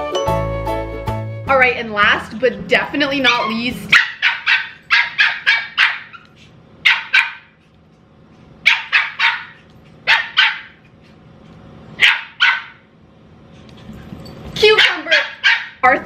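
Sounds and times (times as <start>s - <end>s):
puppy yapping: 3.2s - 7.6s, 8.7s - 10.8s, 12.0s - 12.8s, 14.7s - 15.8s.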